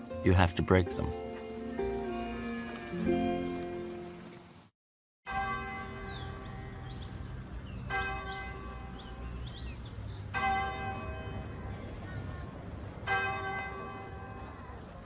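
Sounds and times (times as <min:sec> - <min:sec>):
church bell tolling: 0:05.3 - 0:07.2, 0:07.8 - 0:09.3, 0:10.3 - 0:12.3, 0:13.0 - 0:14.8.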